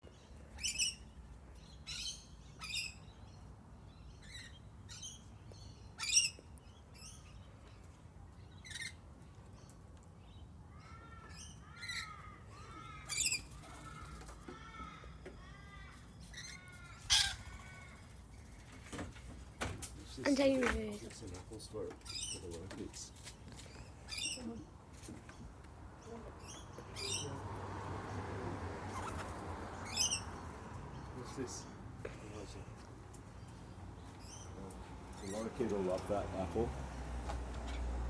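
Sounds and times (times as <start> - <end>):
parrots screeching: 10.8 - 18.1, 28.8 - 30.5.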